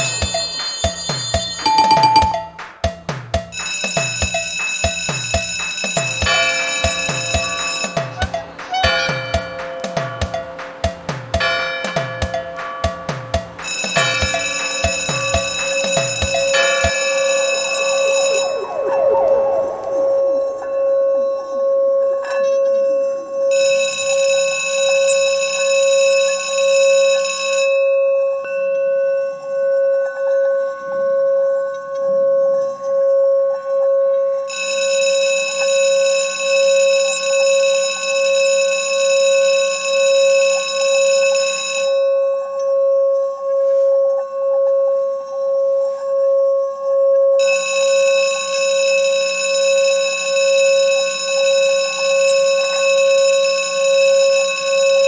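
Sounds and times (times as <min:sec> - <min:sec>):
high bell-like ring: 0:00.0 - 0:18.6
electronic alarm pulsing tone: 0:00.0 - 0:21.4.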